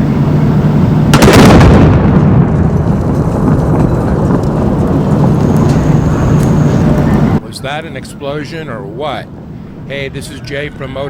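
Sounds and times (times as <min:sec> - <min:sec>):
steady low rumble: 0:00.0 - 0:11.0
car explosion blast: 0:01.1 - 0:06.8.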